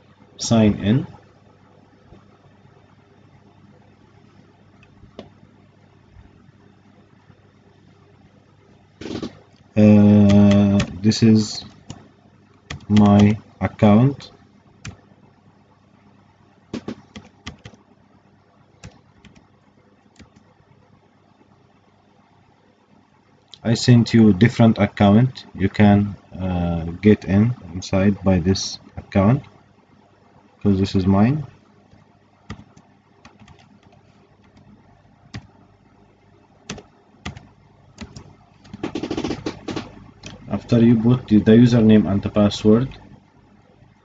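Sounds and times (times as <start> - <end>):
keyboard keystrokes: 12.7 - 13.4, 16.8 - 17.8, 18.8 - 19.4, 31.9 - 34.7, 36.7 - 40.4.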